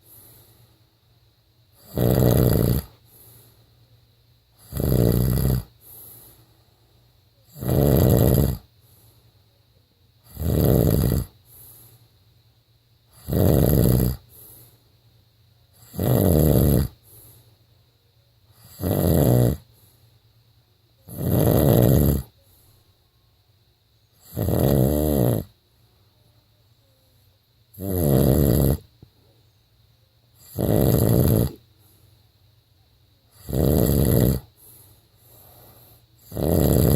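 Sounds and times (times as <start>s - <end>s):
man snoring: 1.8s - 3.0s, 4.6s - 5.8s, 7.5s - 8.7s, 10.3s - 11.4s, 13.1s - 14.3s, 15.8s - 17.0s, 18.6s - 19.7s, 21.1s - 22.4s, 24.2s - 25.6s, 27.8s - 28.9s, 30.4s - 31.6s, 33.4s - 34.6s, 35.4s - 36.9s.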